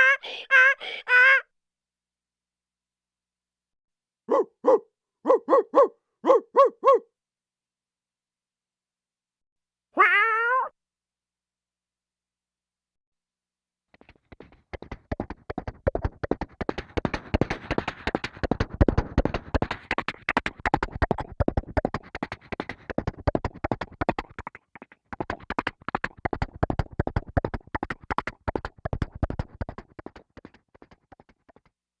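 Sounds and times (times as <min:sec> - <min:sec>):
horse hooves galloping: 0:14.0 - 0:31.7.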